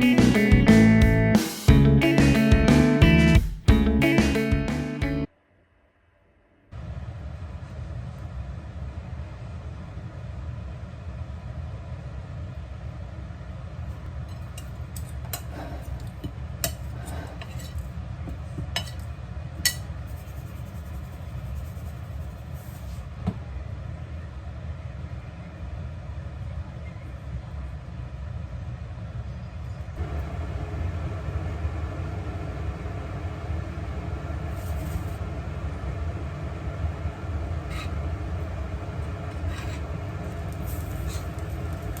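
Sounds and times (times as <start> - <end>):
dishes and glassware clinking: 18.7 - 19.1
steady low hum: 30.0 - 42.0.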